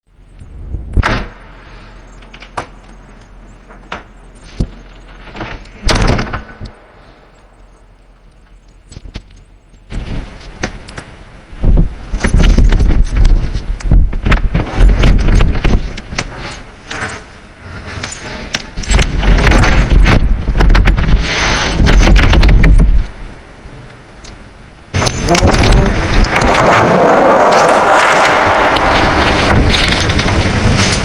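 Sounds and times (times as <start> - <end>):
clatter: 0.2 - 23.2, 23.8 - 31.0
bangs and rattles: 0.3 - 23.3, 24.4 - 31.0.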